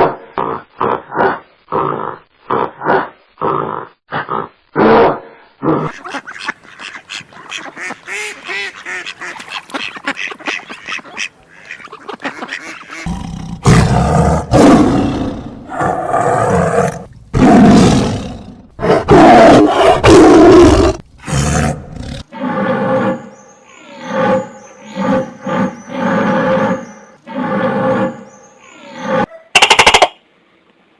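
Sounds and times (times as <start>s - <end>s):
farm animal calls: 5.8s - 14.0s.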